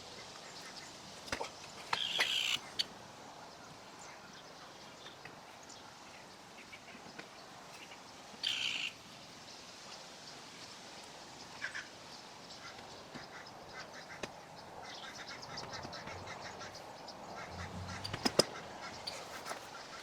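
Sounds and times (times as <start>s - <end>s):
birds chirping: 12.1s - 20.0s.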